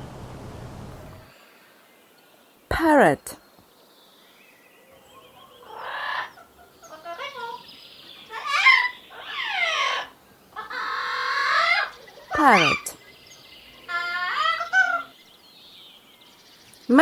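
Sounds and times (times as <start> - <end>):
parrot squawking: 8.3 - 12.9, 13.9 - 15.1.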